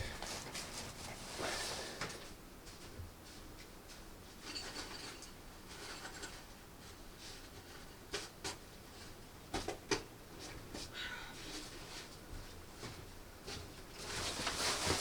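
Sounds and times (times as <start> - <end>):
objects scraping and rustling: 12.8 - 15.0.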